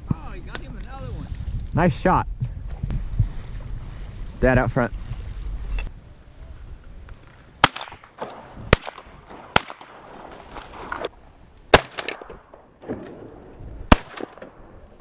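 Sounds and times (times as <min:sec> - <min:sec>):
shotgun shots: 0:07.6 - 0:10.3, 0:11.7 - 0:13.3, 0:13.9 - 0:14.7.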